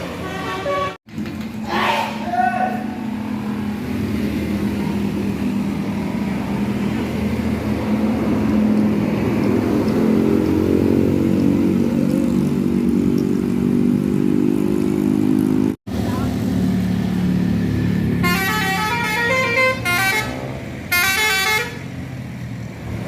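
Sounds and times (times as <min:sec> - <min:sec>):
bus engine running: 0:00.0 - 0:23.0.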